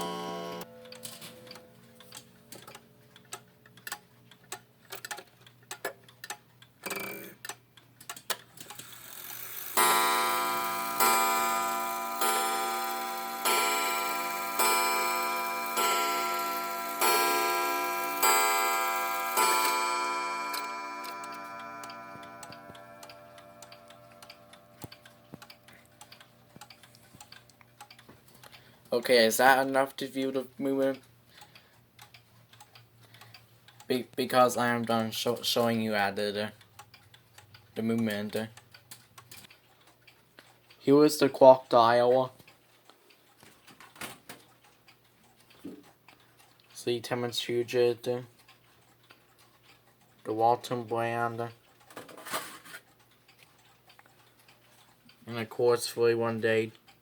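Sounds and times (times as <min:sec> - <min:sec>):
clock striking a gong: 0:00.0 - 0:01.6, 0:09.7 - 0:24.8
clock ticking: 0:00.0 - 0:57.0.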